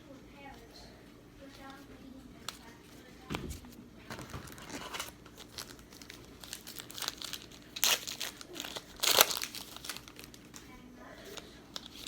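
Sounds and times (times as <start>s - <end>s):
plastic packaging crinkling: 4.0s - 12.0s.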